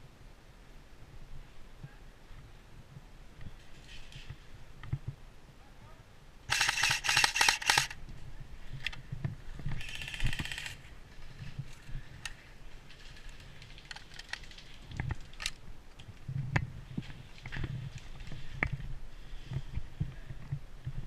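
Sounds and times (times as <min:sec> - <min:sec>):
airsoft gun firing bursts: 0:06.5 - 0:08.0.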